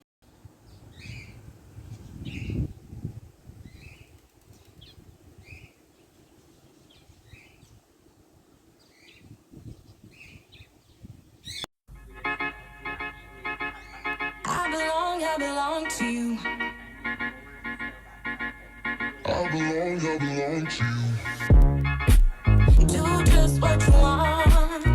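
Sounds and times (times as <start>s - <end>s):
music: 11.9s - 24.9s
parrots chirping: 13.7s - 14.3s.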